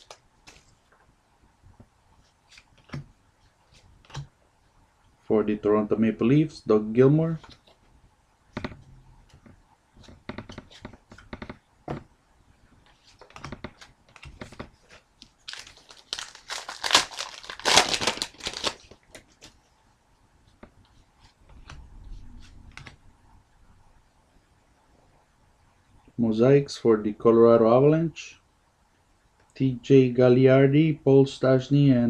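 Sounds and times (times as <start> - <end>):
cards clicking and rustling: 12.9 - 19.6
wrapper crinkling and tearing: 14.9 - 19.5.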